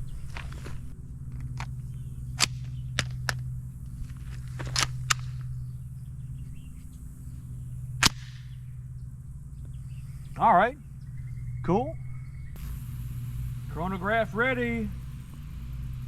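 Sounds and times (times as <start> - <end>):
steady low hum: 0.0 - 16.0
cartridges clicking into gun: 4.6 - 5.5, 8.0 - 8.5.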